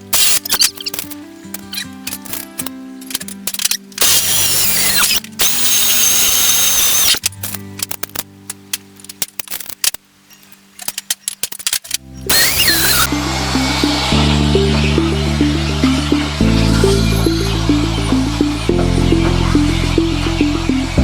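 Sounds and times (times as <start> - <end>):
power drill running: 0.0 - 0.4, 4.0 - 7.2, 12.3 - 14.0
background music with low notes: 0.0 - 9.3, 12.0 - 21.0.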